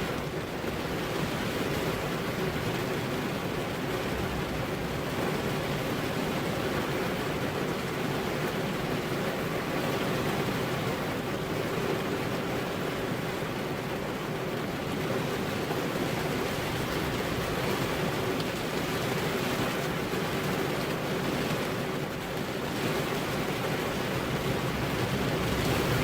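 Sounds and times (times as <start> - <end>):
heavy rain hiss: 0.0 - 26.0.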